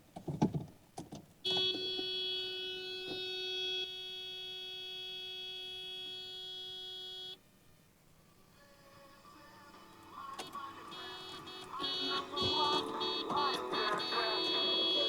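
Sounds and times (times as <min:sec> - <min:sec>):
car warning buzzer: 0:01.4 - 0:07.6, 0:09.6 - 0:15.0.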